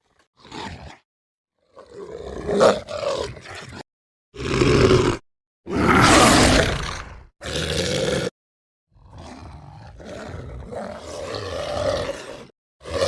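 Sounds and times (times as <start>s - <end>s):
werewolf roar: 4.4s - 8.3s, 10.7s - 13.0s.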